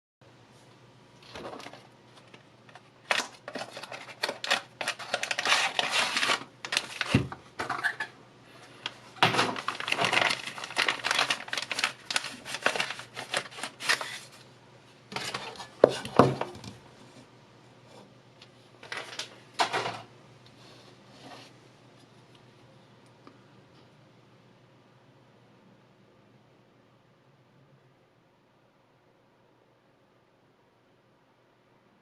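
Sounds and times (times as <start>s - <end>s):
packaging crinkling and rustling: 1.2s - 14.5s, 15.1s - 16.8s, 18.8s - 20.0s.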